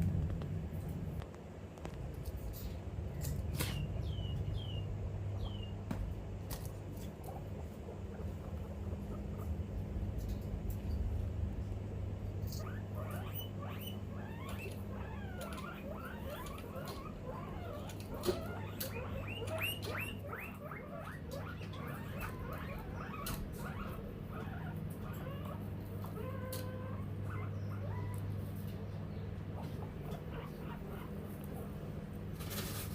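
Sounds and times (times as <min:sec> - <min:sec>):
low hum: 0:00.0 - 0:15.6
guinea pig chirping: 0:03.5 - 0:05.8, 0:12.5 - 0:32.9.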